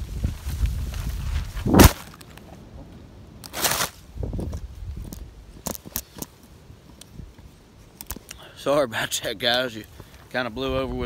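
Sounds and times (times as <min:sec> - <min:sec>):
rustling: 0:00.0 - 0:02.8.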